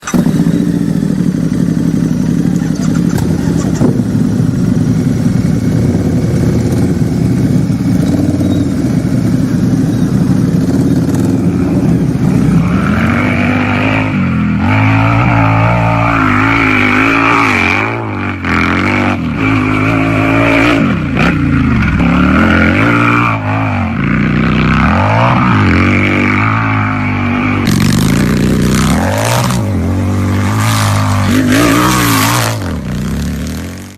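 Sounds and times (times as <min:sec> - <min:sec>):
motorcycle engine idling: 0:00.0 - 0:13.0
motorcycle engine revving: 0:00.0 - 0:33.9.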